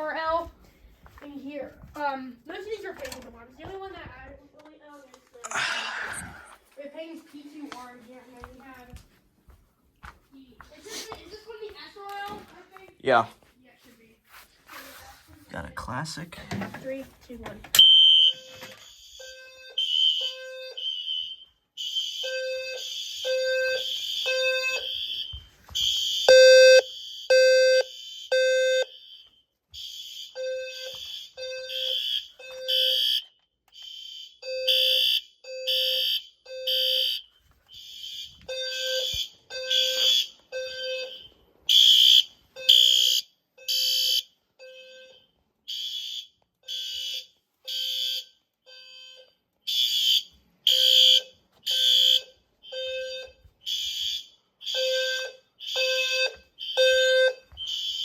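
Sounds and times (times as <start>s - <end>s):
fire alarm horn blasts: 17.8s - 58.0s.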